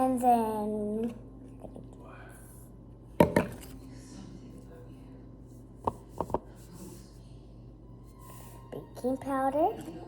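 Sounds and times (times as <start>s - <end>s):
low steady hum: 0.0s - 10.0s
hard object knocking on surface: 3.2s - 3.6s, 5.8s - 6.5s.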